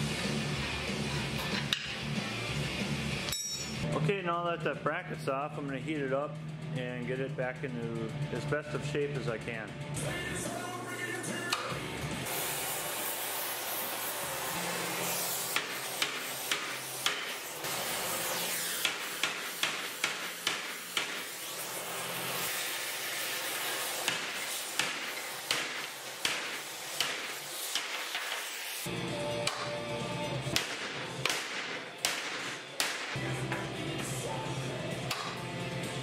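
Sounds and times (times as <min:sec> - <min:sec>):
gas torch hissing: 0:12.2 - 0:28.9.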